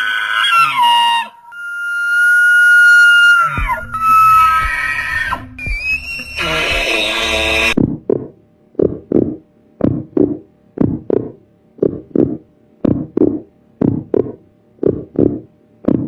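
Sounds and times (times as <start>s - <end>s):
faint steady hum: 0.0s - 16.0s
rhythmic paired hits: 3.6s - 7.1s.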